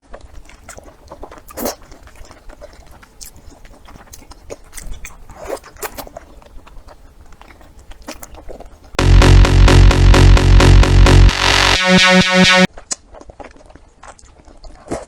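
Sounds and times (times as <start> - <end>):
person chewing food with crunches: 0.0 - 9.0, 12.8 - 15.0.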